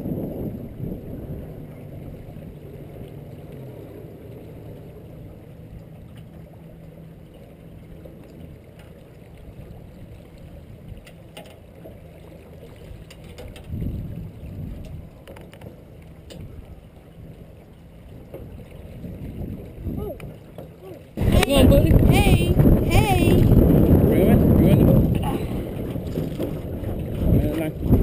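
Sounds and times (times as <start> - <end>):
wind noise: 0.0 - 2.4, 13.4 - 15.2, 21.2 - 28.0
boat motor humming: 0.0 - 28.0
water wash: 0.0 - 28.0.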